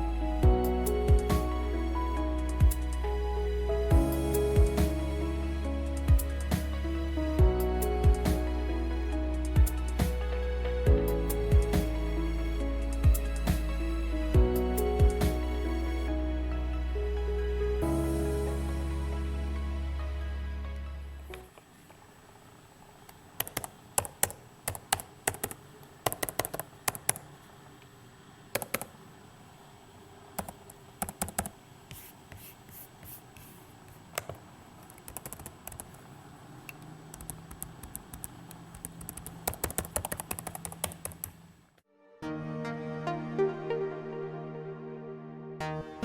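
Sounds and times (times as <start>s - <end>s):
laptop keyboard typing: 23.4s - 27.3s, 28.5s - 28.9s, 30.4s - 32.5s, 34.1s - 36.0s, 36.7s - 41.4s.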